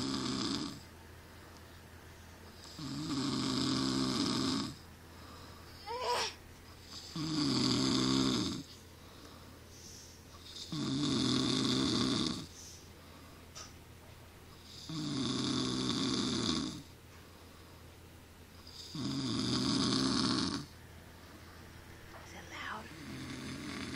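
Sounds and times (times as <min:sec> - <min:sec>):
man snoring: 0:00.0 - 0:00.9, 0:02.6 - 0:05.4, 0:07.0 - 0:08.7, 0:10.4 - 0:12.5, 0:14.6 - 0:16.9, 0:18.6 - 0:20.7, 0:22.9 - 0:23.9.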